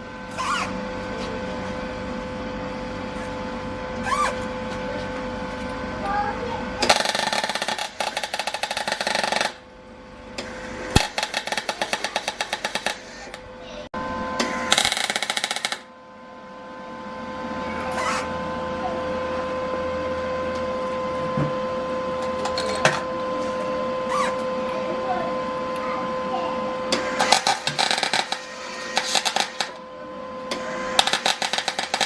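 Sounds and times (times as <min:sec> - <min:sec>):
steady tonal hum: 0:00.0 - 0:32.0
electric welder crackling: 0:06.8 - 0:09.7, 0:10.4 - 0:13.5, 0:14.4 - 0:15.9, 0:26.9 - 0:29.8, 0:30.5 - 0:32.0.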